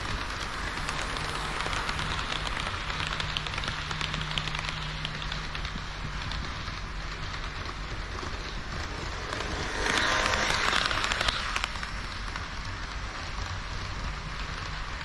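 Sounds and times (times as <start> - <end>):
model train wheels rattling on track: 0.0 - 15.0.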